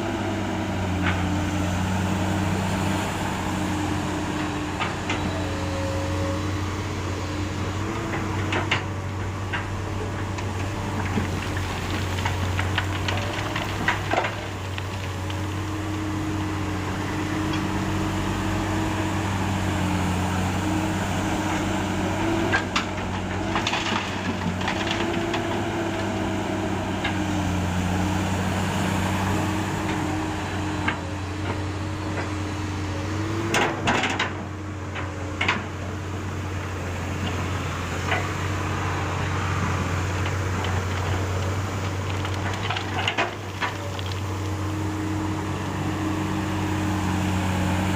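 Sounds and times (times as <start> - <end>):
excavator diesel engine running: 0.0 - 47.9.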